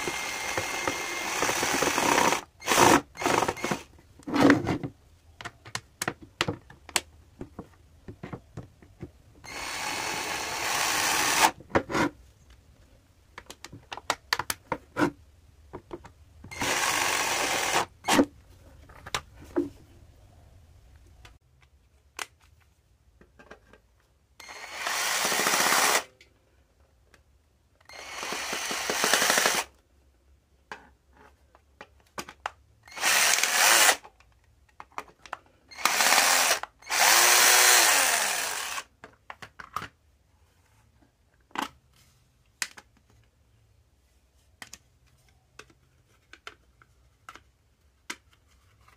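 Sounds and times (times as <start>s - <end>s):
cordless drill running: 0.0s - 3.9s, 9.5s - 11.6s, 16.5s - 17.9s, 24.4s - 26.1s, 27.9s - 29.7s, 32.9s - 34.0s, 35.8s - 38.9s.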